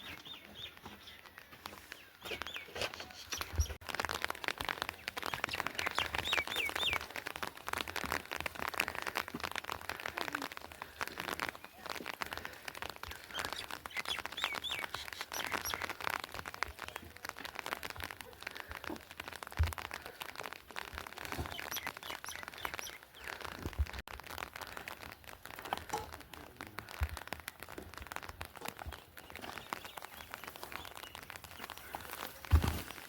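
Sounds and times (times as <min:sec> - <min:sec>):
birds chirping: 0:00.0 - 0:09.2, 0:09.9 - 0:19.1, 0:21.1 - 0:24.0, 0:28.6 - 0:32.9.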